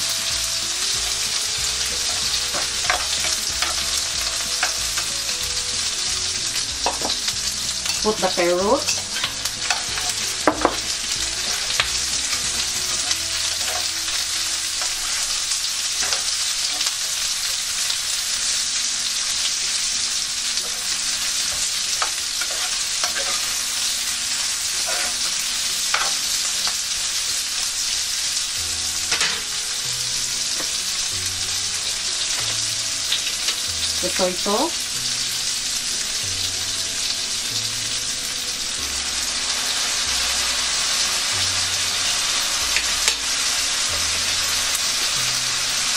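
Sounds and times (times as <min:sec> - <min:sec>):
food sizzling in oil: 0:00.0 - 0:45.9.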